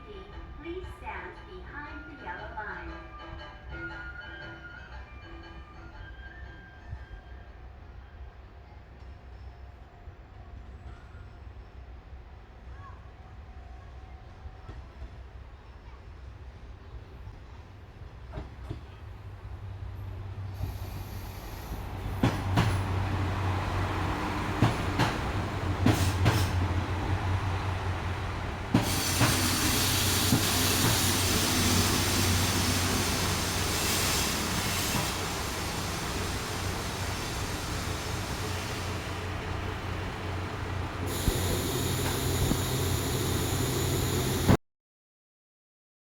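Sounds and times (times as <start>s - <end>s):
diesel train engine drone: 17.4s - 44.6s
wheels clacking over rail joints: 21.7s - 44.6s
steady high hiss: 29.2s - 44.6s.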